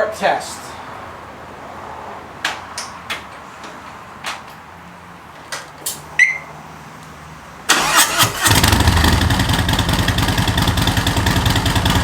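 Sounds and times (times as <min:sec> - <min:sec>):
starter cranking: 0:07.7 - 0:09.0
motorcycle engine idling: 0:08.6 - 0:12.0.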